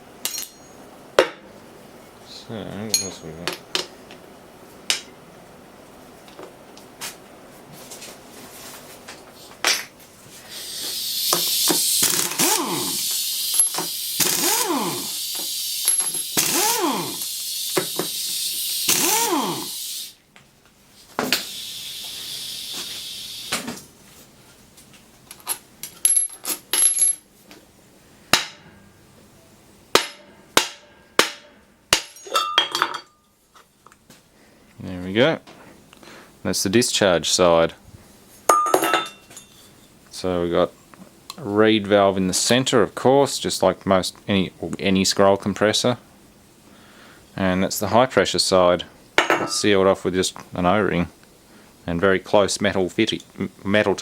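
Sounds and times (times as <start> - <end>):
metal parts tapping and clinking: 0.2 - 0.8, 15.8 - 16.4, 25.3 - 27.2
harsh hiss and squeals: 10.4 - 20.2, 21.3 - 23.6.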